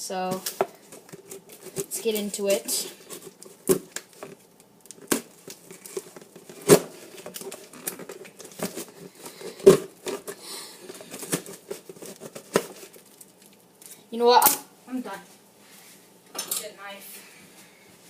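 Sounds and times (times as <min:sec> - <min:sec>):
packaging crinkling: 0:00.4 - 0:14.0
tape tearing: 0:03.0 - 0:13.6.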